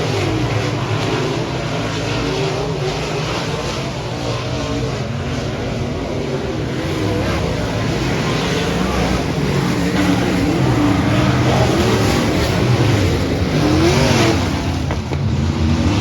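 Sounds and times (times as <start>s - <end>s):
race car engines running hard: 0.0s - 16.0s.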